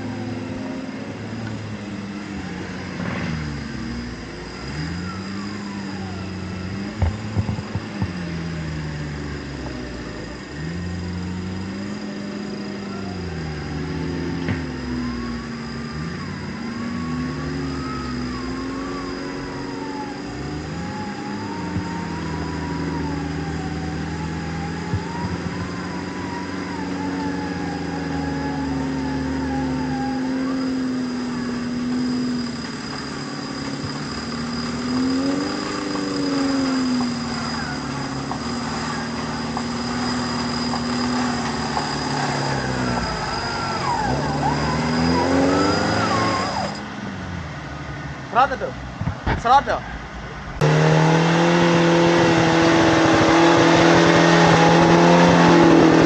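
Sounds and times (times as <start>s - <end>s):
off-road engine revving: 0.0s - 56.0s.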